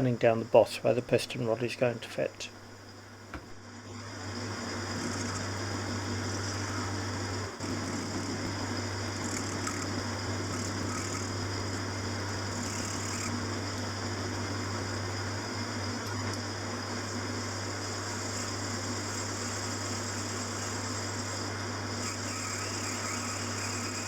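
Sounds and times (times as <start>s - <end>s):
metal lathe motor hum: 3.8s - 24.0s
lathe tool cutting brass: 6.4s - 13.6s, 17.9s - 24.0s.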